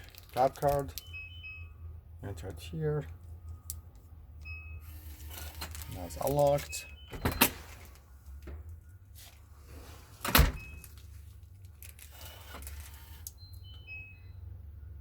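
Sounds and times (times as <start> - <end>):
electronic lock beeps: 1.0 - 1.9, 4.4 - 7.8, 10.4 - 10.9, 13.0 - 14.6.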